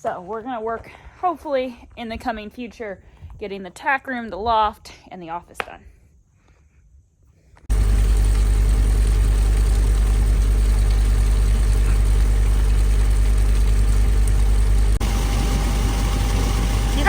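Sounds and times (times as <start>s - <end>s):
vehicle engine idling: 7.7s - 17.0s.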